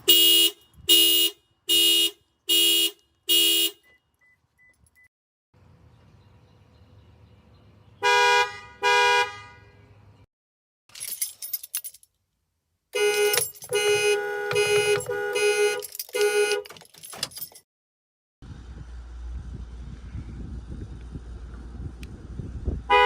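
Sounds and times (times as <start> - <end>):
car horn honking: 0.0 - 4.0, 8.0 - 10.1, 13.0 - 16.8.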